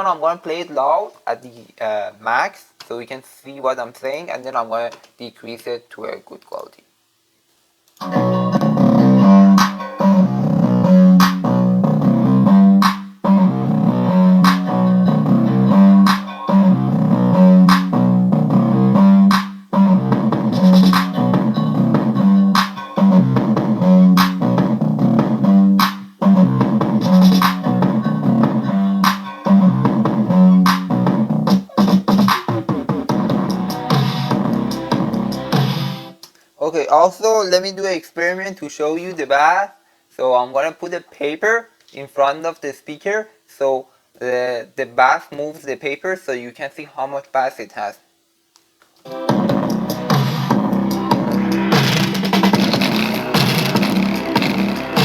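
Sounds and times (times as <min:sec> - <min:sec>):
bass-boosted music with guitar: 0:08.0 - 0:36.1, 0:49.1 - 0:55.0.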